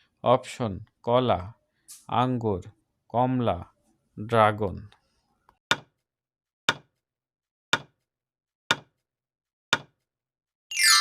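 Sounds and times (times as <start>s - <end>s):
bright ding chime: 10.7s - 11.0s.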